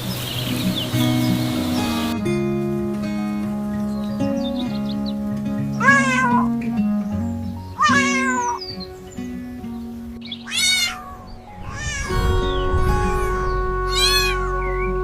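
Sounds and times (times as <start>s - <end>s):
soft background music: 0.0s - 15.0s
cat meowing: 5.8s - 6.5s, 7.8s - 8.7s, 10.4s - 14.6s.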